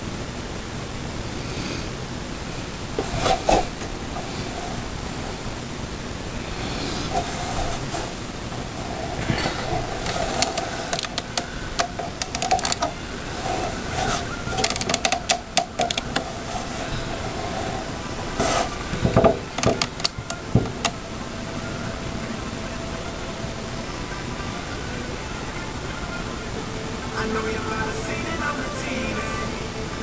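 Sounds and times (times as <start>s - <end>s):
faint hum: 0.0s - 30.0s
clicks of computer hardware: 9.3s - 12.9s, 14.0s - 16.3s, 19.5s - 21.0s.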